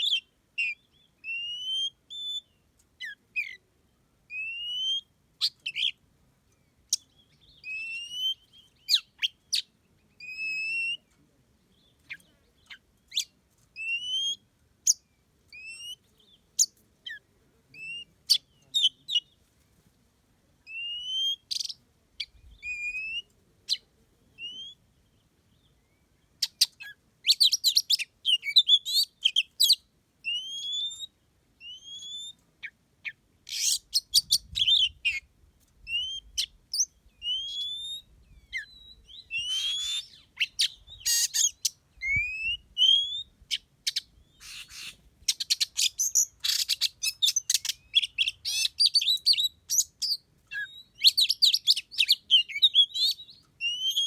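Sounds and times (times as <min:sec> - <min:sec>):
songbirds whistling: 0:00.0 - 0:03.6, 0:04.3 - 0:06.0, 0:06.6 - 0:11.1, 0:11.7 - 0:17.2, 0:20.7 - 0:54.0
birds chattering: 0:35.9 - 0:49.9.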